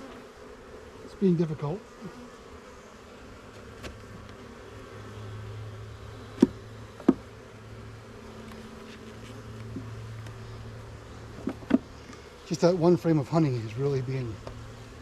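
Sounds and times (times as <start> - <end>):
bees buzzing: 0.0 - 15.0
sharp knocks: 6.4 - 7.2.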